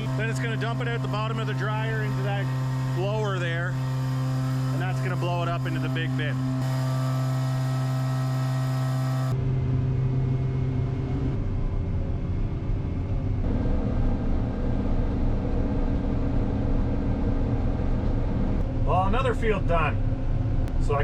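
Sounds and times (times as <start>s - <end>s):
low uneven engine rumble: 0.0s - 6.6s
grain dryer humming: 0.0s - 9.4s.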